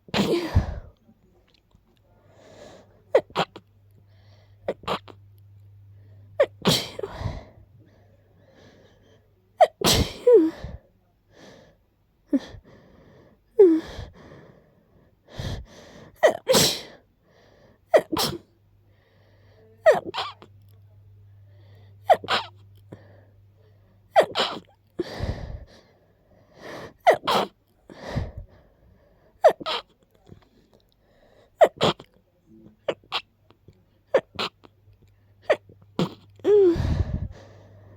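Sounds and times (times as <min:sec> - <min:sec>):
person sneezing: 0:00.1 - 0:00.9, 0:03.1 - 0:03.6, 0:04.7 - 0:05.2, 0:06.4 - 0:07.4, 0:09.6 - 0:10.8, 0:16.2 - 0:17.0, 0:17.9 - 0:18.5, 0:19.8 - 0:20.5, 0:22.0 - 0:22.6, 0:24.2 - 0:25.2, 0:27.0 - 0:27.6, 0:29.4 - 0:29.9, 0:31.6 - 0:32.1, 0:34.1 - 0:34.7, 0:35.4 - 0:37.4.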